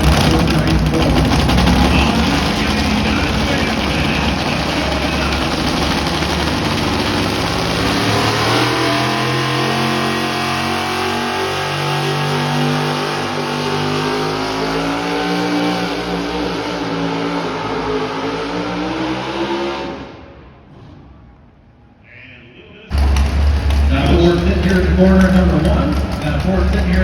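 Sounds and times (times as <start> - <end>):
truck engine at high revs: 0.0 - 21.1, 22.9 - 27.0.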